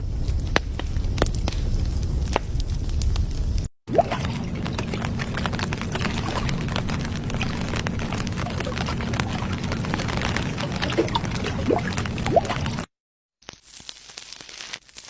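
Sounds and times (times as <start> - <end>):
steady low hum: 4.1 - 12.3
wet chewing and smacking: 4.2 - 12.8.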